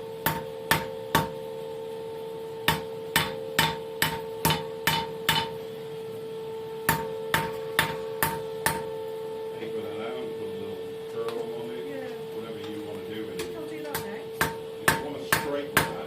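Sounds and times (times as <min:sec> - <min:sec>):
steady hum: 0:00.0 - 0:16.0
hammer striking steel on anvil: 0:00.2 - 0:01.4, 0:02.7 - 0:05.6, 0:06.9 - 0:08.9, 0:13.4 - 0:16.0.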